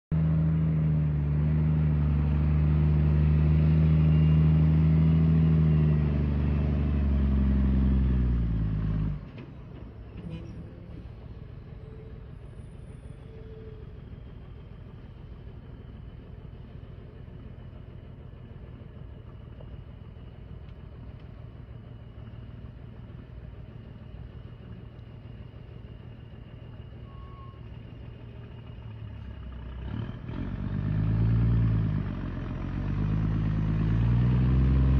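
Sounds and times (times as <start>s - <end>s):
diesel truck engine under load: 0.1s - 34.9s.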